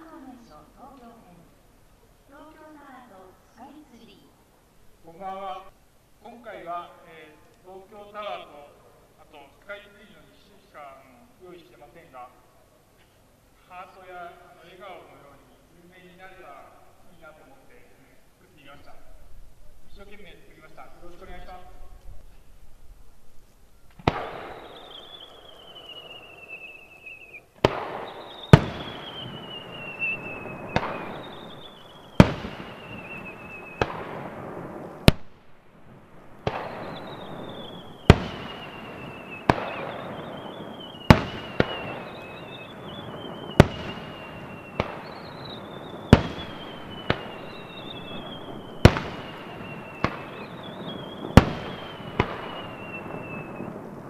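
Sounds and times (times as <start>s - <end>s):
firework shells bursting: 18.7s - 54.0s
falling whistling tone: 23.8s - 34.0s, 36.5s - 53.9s.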